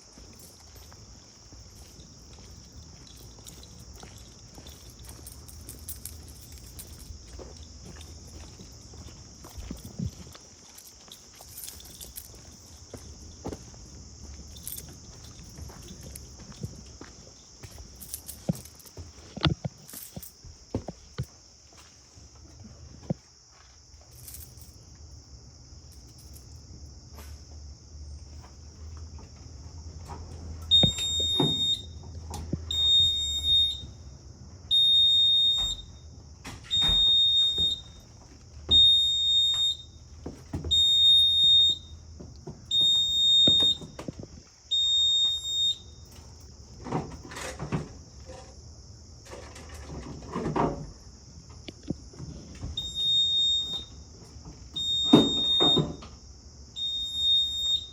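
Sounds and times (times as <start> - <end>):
rattle: 3.0 - 7.2
fire alarm beeping: 30.6 - 32.1, 32.7 - 34.0, 34.7 - 38.1, 38.7 - 40.1, 40.7 - 42.0, 42.7 - 44.0, 44.7 - 46.3, 52.8 - 54.1, 54.7 - 56.0, 56.8 - 57.9.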